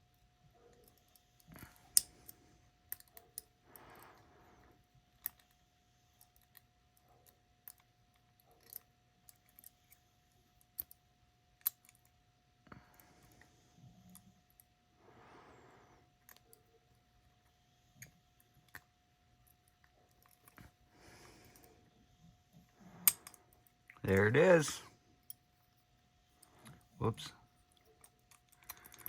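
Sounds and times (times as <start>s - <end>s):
metallic lock picking clicks: 1.8s - 3.5s, 5.2s - 5.6s, 7.6s - 10.0s, 10.6s - 11.0s, 11.6s - 12.1s, 23.0s - 23.6s, 27.8s - 29.0s.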